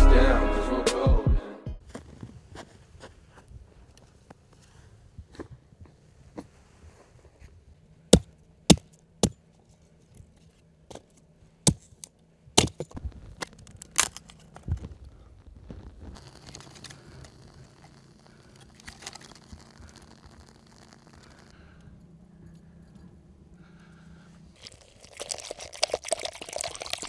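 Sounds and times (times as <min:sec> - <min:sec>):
faint rustling and scraping: 0:01.8 - 0:07.9, 0:12.9 - 0:24.5.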